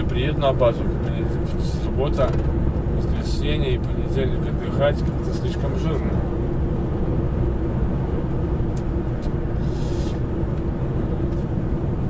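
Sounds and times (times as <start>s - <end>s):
truck engine and road drone: 0.0s - 12.0s.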